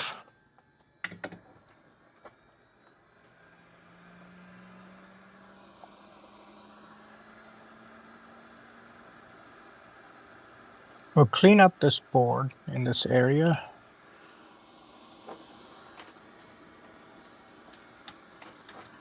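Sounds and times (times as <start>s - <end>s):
hot air station fan hiss: 0.0s - 0.3s, 1.8s - 19.0s.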